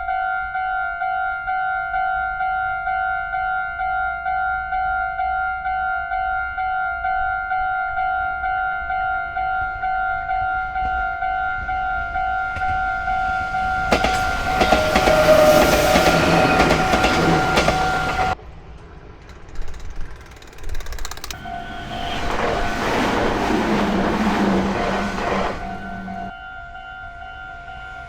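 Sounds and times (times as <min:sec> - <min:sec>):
train rumble: 0:09.2 - 0:28.0.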